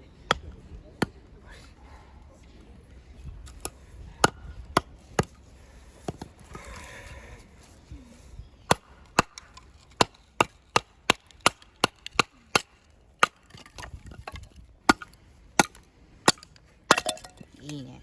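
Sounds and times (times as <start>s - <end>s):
firewood cracking: 8.7s - 17.6s.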